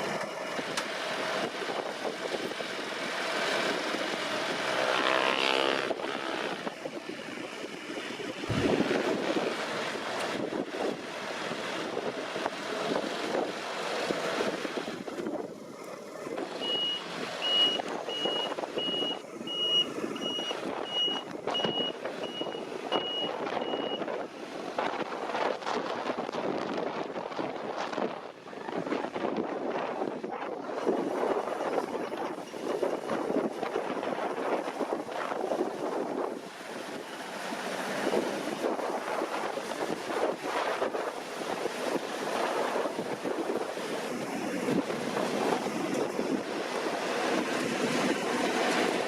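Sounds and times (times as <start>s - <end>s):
combine harvester running: 0.0s - 49.0s
reversing alarm beeping: 16.6s - 24.0s.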